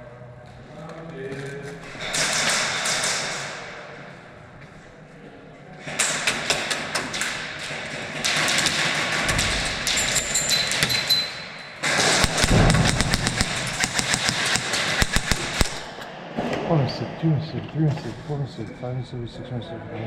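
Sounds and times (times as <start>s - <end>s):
airsoft guns firing: 5.8s - 11.0s, 11.8s - 16.0s.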